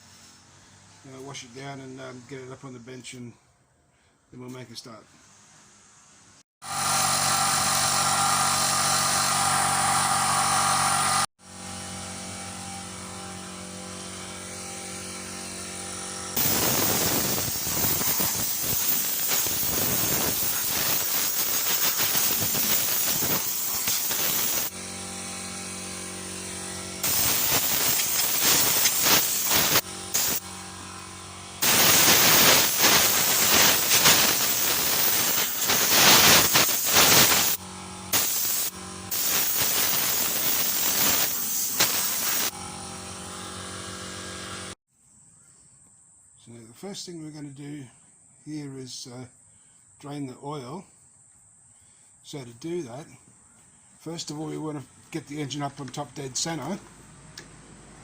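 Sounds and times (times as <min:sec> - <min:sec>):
motor running: 0:06.6 - 0:44.8
high-pressure spray hissing: 0:14.3 - 0:24.8, 0:26.0 - 0:30.5, 0:31.6 - 0:42.6.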